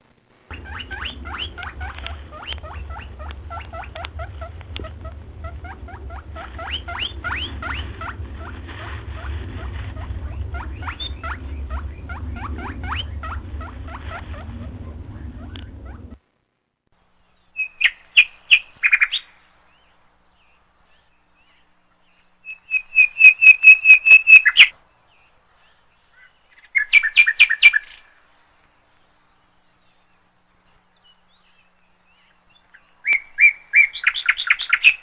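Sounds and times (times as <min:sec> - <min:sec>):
steady low rumble: 0:00.0 - 0:22.5
small birds chirping: 0:00.5 - 0:16.2, 0:17.0 - 0:35.0.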